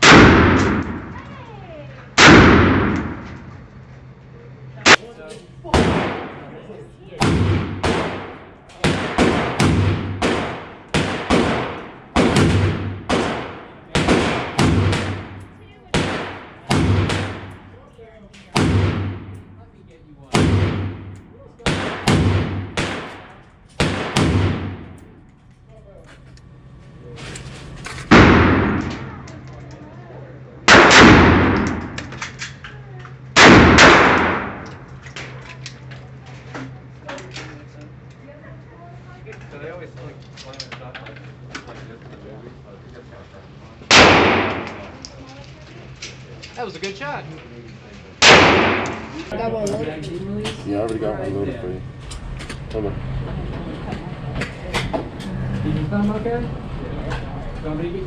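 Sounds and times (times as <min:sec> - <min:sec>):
gunshots with echo: 0:00.0 - 0:01.2, 0:05.8 - 0:06.5, 0:07.2 - 0:17.7, 0:18.6 - 0:19.4, 0:20.3 - 0:25.1, 0:30.7 - 0:32.1, 0:33.4 - 0:34.7, 0:43.9 - 0:45.0, 0:48.2 - 0:49.2.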